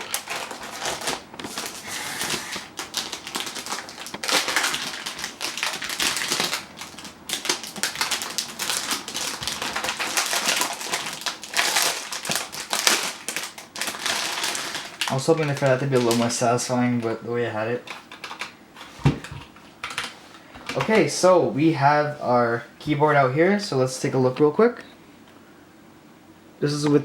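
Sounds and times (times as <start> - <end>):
plastic wrapping crinkling: 0.0 - 17.1.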